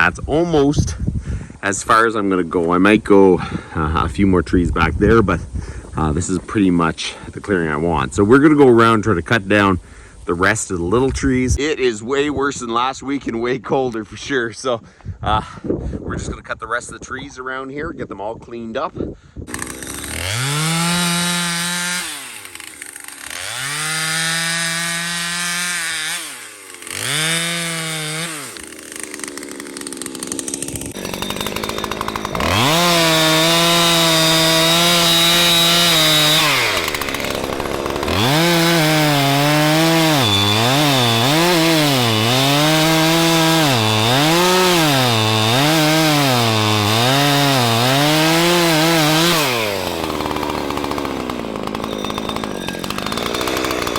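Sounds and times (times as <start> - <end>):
chainsaw revving and cutting: 19.5 - 53.9.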